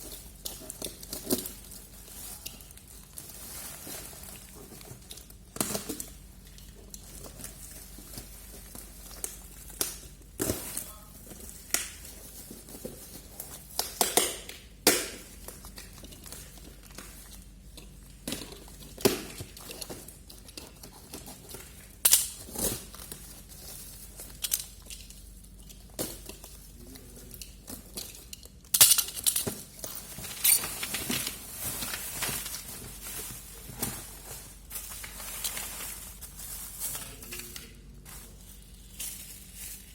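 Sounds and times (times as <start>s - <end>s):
plastic packaging crinkling: 0.0s - 14.0s, 29.6s - 39.9s.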